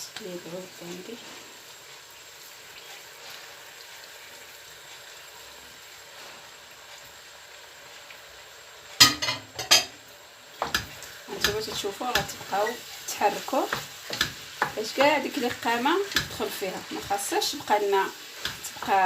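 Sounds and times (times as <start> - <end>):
meat sizzling in a pan: 0.0 - 19.0
wooden spoon scraping a pan: 10.6 - 19.0.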